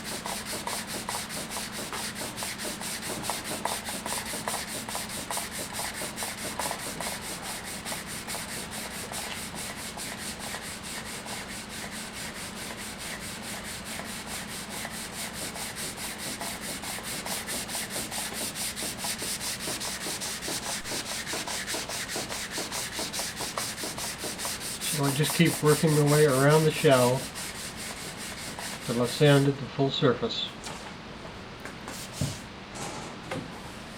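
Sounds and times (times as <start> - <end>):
sandpaper rubbing on wood: 0.0 - 29.5.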